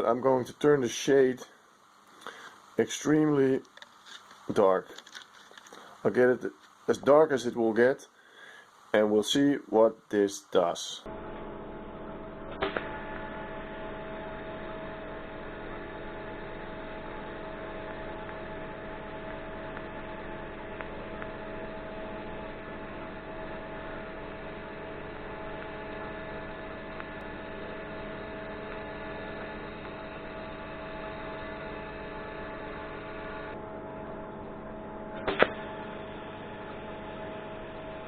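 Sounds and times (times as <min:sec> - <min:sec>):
welding arc humming: 0:00.0 - 0:08.0, 0:10.4 - 0:38.0
welding arc click: 0:35.2 - 0:35.6.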